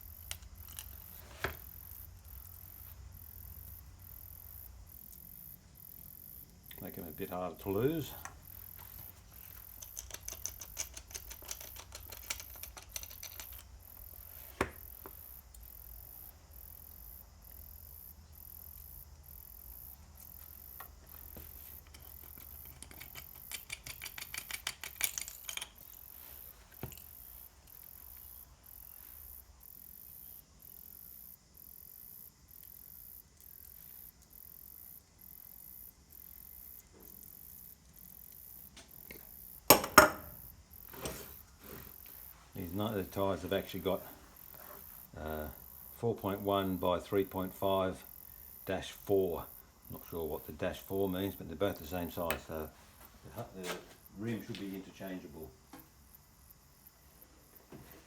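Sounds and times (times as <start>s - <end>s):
ratchet wrench clicking: 9.6s - 14.3s, 21.3s - 25.9s.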